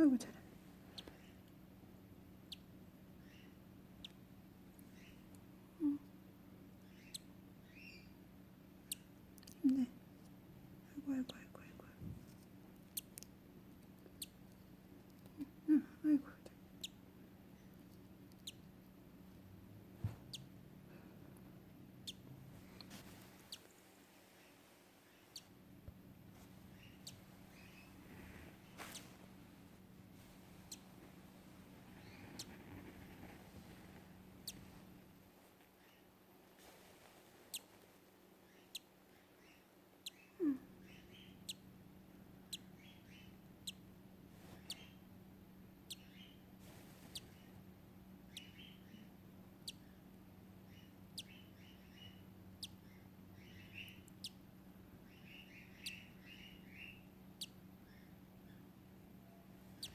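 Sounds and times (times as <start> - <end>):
chick peeping: 7.0 - 8.2, 31.8 - 33.4, 44.5 - 45.0.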